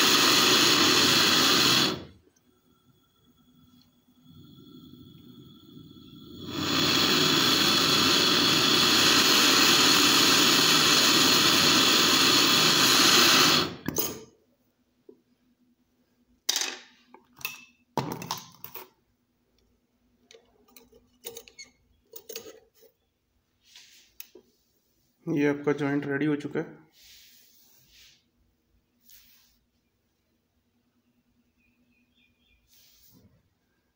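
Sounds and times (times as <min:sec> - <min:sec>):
gas torch flame hissing: 0:00.0 - 0:14.2, 0:26.9 - 0:28.3, 0:29.0 - 0:29.7, 0:32.6 - 0:33.4.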